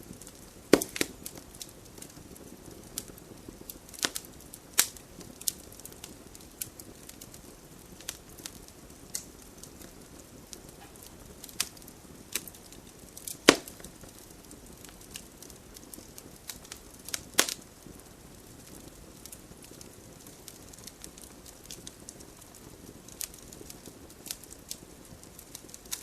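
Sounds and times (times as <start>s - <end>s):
campfire crackling: 0.0s - 26.0s.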